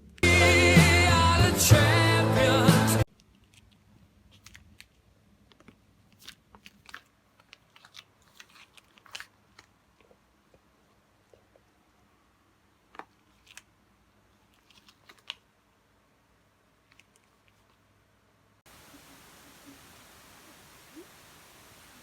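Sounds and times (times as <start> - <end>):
background music: 0.2 - 3.1
packaging crackling and rustling: 3.2 - 10.2, 12.8 - 13.7, 14.4 - 15.5.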